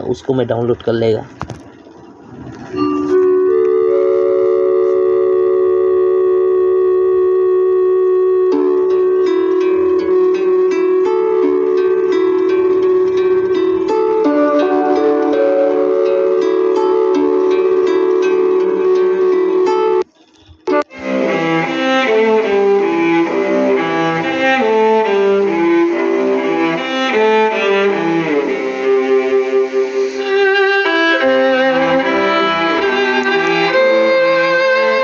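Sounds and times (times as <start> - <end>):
violin and strings music: 8.4 - 35.0.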